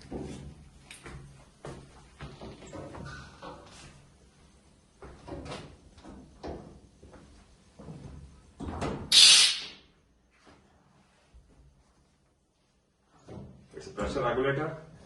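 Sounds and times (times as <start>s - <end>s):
compressed air hiss: 9.1s - 9.9s.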